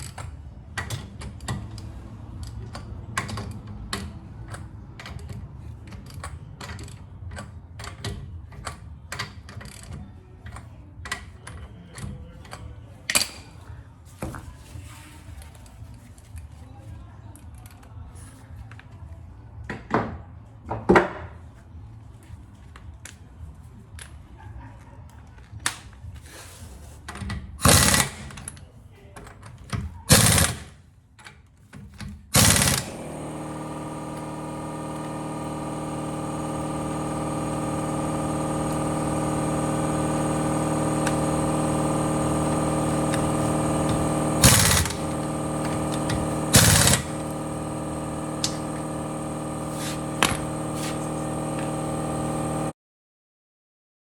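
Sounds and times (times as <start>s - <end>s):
power tool bursts: 27.6s - 28.5s, 30.1s - 30.8s, 32.3s - 52.8s
motor humming: 32.4s - 52.8s.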